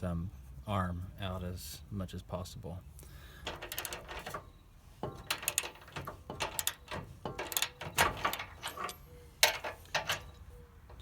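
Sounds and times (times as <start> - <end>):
wrench clicking and knocking: 3.5 - 4.4, 5.0 - 10.3.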